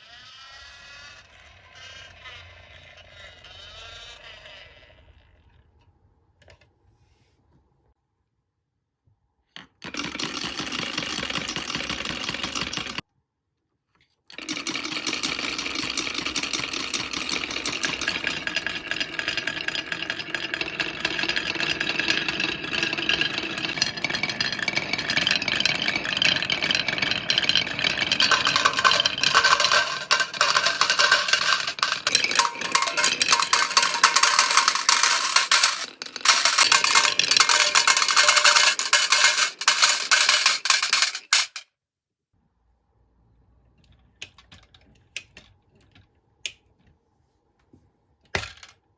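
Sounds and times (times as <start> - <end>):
marbles clattering down marble run: 20.0 - 41.6.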